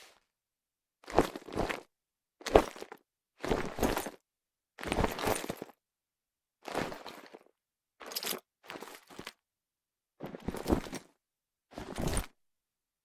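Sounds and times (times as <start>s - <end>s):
handbag with chain strap handled: 4.9s - 5.7s, 8.0s - 9.4s, 10.3s - 11.1s.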